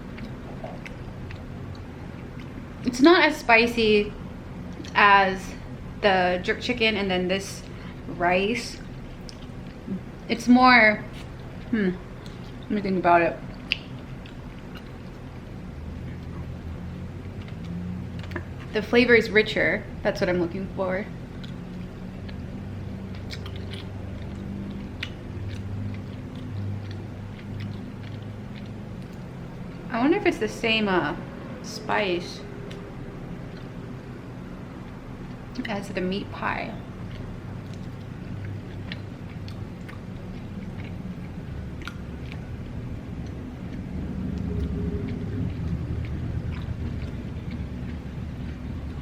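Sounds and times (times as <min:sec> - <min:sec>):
chewing food: 0:00.0 - 0:02.9, 0:07.6 - 0:10.3, 0:11.0 - 0:18.9, 0:19.8 - 0:29.9, 0:32.4 - 0:49.0
wet mouth clicks: 0:13.5 - 0:15.3, 0:21.4 - 0:29.8, 0:37.0 - 0:42.5
low rumble: 0:29.0 - 0:49.0.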